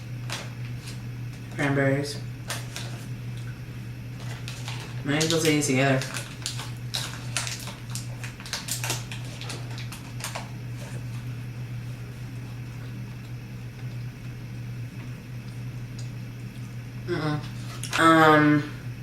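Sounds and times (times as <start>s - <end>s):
low electrical hum: 0.0s - 19.0s
plastic snack bag crinkling: 4.2s - 11.2s.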